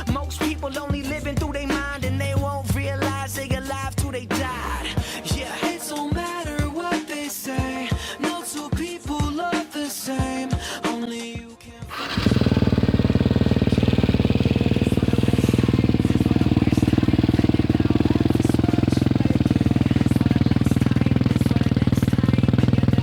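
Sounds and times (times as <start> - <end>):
motocross bike engine running: 11.9 - 23.0.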